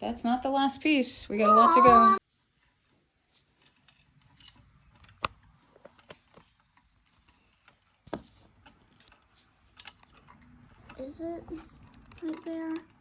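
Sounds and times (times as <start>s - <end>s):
plastic and metal parts clicking: 3.6s - 13.0s.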